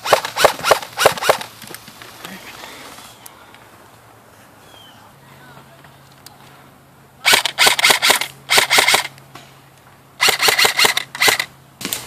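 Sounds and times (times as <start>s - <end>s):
airsoft rifle full-auto fire: 0.0s - 1.4s, 7.2s - 9.1s, 10.2s - 12.0s.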